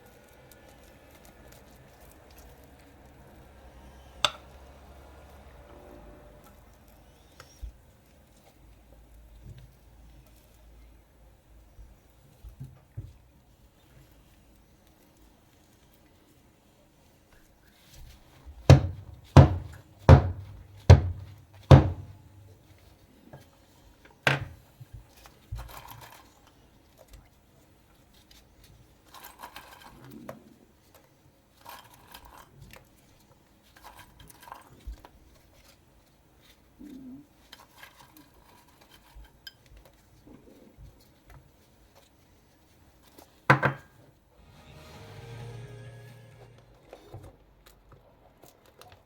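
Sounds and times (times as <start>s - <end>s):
utensil knocking against dish: 18.7s - 22.2s.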